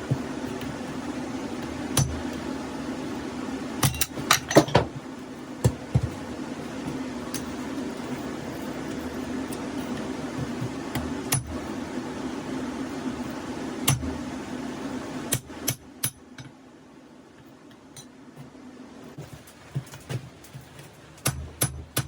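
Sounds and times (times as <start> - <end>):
forge equipment running: 0.0 - 16.2.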